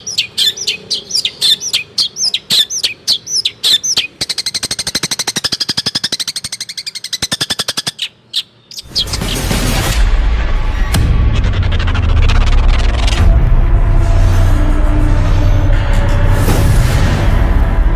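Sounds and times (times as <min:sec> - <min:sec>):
noisy swell with deep rumble: 0:09.3 - 0:17.9.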